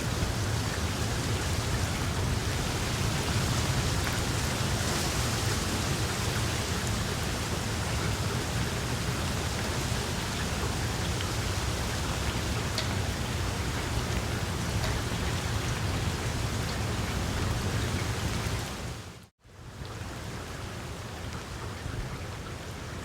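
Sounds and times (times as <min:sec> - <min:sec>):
rain on leaves: 0:00.0 - 0:23.0.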